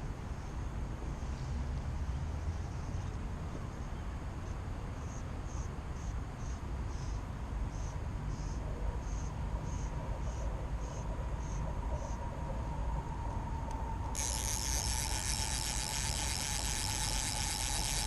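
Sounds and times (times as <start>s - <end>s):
insect chirping: 13.9s - 18.0s.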